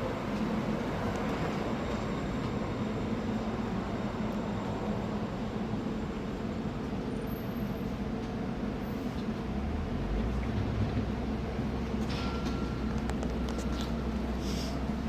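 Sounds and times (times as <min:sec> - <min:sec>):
train hum: 0:00.0 - 0:15.0.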